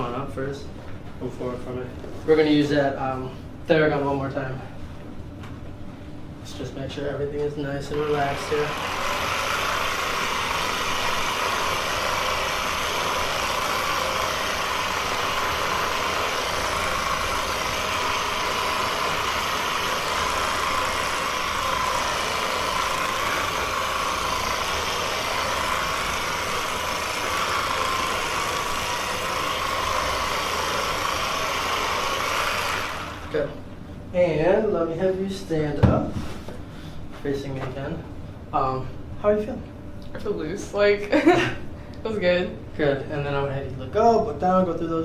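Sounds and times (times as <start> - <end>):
massage gun motor buzzing: 7.8 - 33.6.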